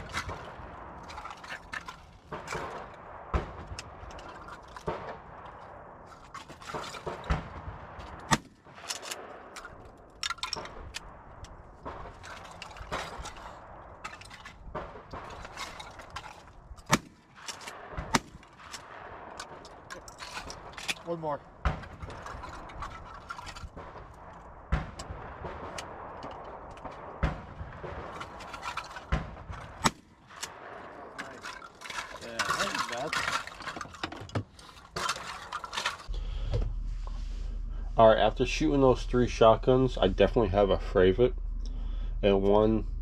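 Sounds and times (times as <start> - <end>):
shotgun shots: 0.0 - 15.9, 16.8 - 22.8, 23.6 - 31.5.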